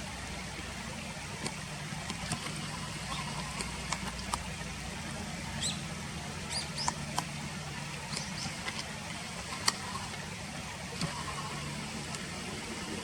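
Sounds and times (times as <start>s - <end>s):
low background hum: 0.0s - 13.0s
small birds chirping: 1.6s - 10.3s.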